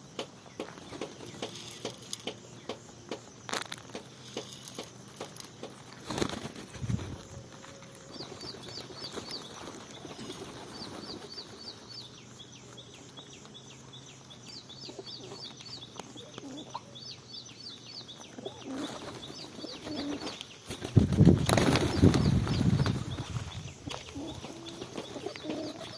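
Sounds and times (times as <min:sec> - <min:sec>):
small birds chirping: 0:00.0 - 0:25.9
wings flapping: 0:04.0 - 0:11.7, 0:18.6 - 0:25.9.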